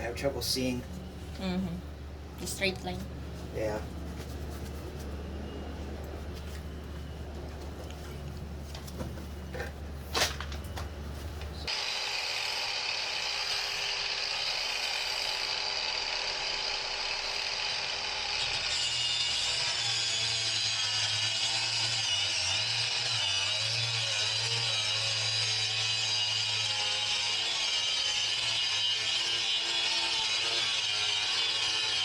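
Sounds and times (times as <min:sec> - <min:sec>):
power tool cutting board: 0:11.7 - 0:32.0.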